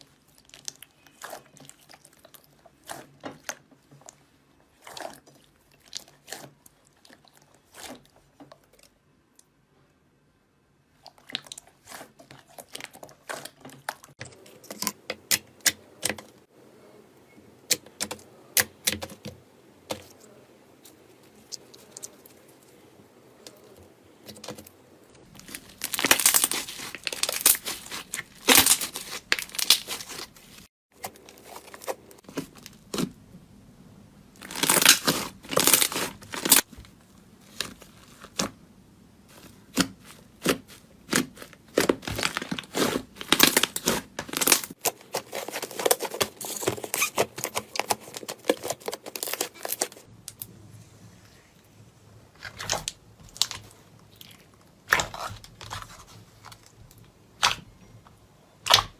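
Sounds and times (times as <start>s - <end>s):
crunchy material crackling and tearing: 19.9s - 33.2s, 34.4s - 38.6s, 39.3s - 50.5s, 52.4s - 56.8s.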